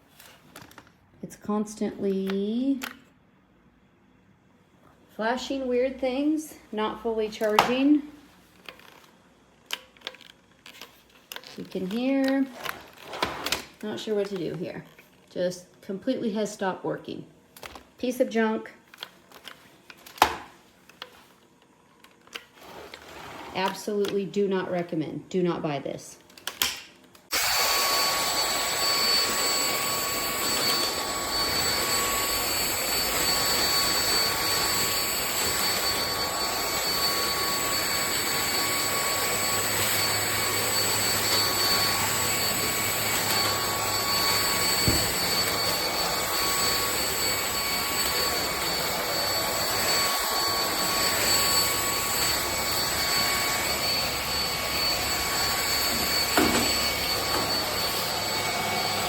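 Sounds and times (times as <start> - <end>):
vacuum cleaner motor whining: 27.3 - 59.0.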